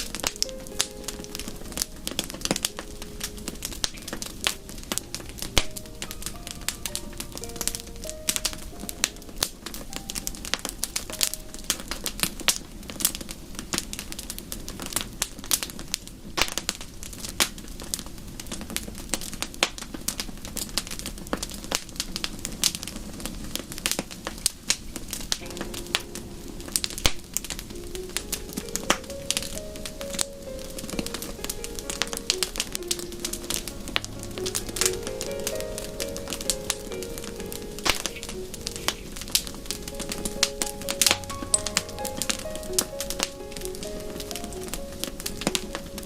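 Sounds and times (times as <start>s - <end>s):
soft melodic notes: 0.0s - 15.7s, 25.4s - 46.0s
wood fire crackling: 0.0s - 46.0s
fire pops and snaps: 16.3s - 26.2s, 26.8s - 46.0s.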